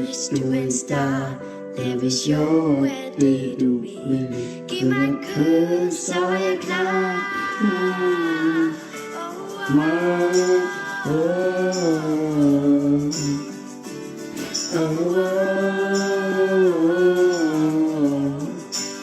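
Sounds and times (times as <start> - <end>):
bass: 0.0 - 9.0
guitar: 0.0 - 19.0
piano: 0.0 - 19.0
person singing long held notes: 2.5 - 13.4, 14.7 - 18.8
shaker rattling: 6.1 - 19.0.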